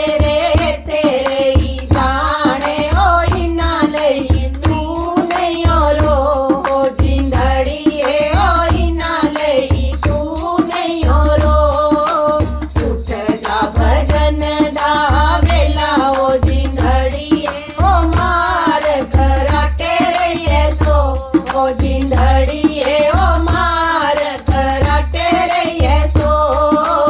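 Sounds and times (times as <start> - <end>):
drum beat: 0.0 - 27.0.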